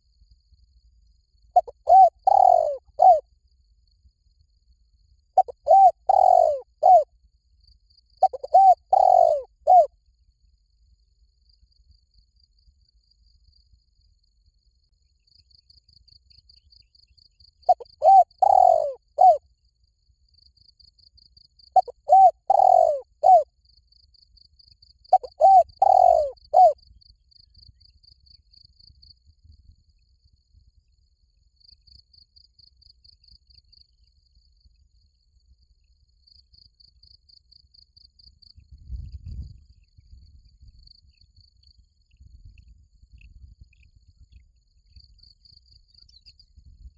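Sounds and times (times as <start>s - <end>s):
crickets chirping: 0.0s - 46.9s
dove cooing: 1.6s - 3.2s, 5.4s - 7.1s, 8.2s - 9.9s, 17.7s - 19.4s, 21.8s - 23.4s, 25.1s - 26.8s.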